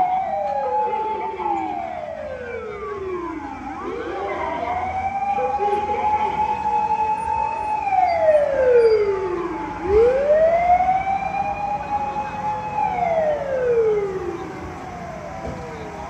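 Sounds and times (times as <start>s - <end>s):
fire engine siren wailing: 0.0s - 16.0s.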